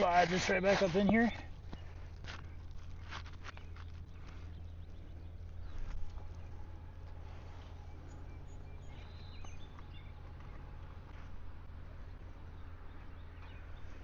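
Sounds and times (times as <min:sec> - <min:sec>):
shingle scuffs and knock: 0:00.0 - 0:04.0.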